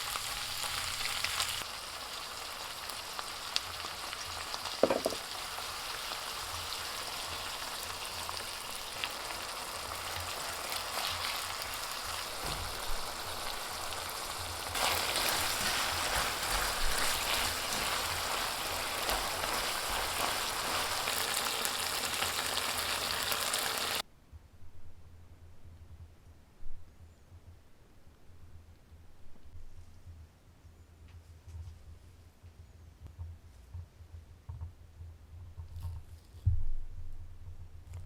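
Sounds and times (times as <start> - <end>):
meat sizzling in hot oil: 0.0 - 24.0.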